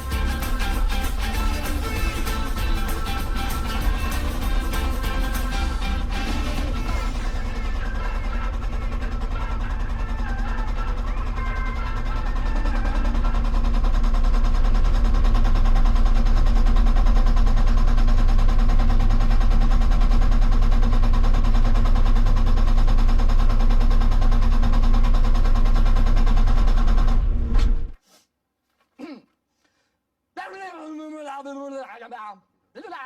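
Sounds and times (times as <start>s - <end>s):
excavator engine pulsing: 0.0s - 28.0s.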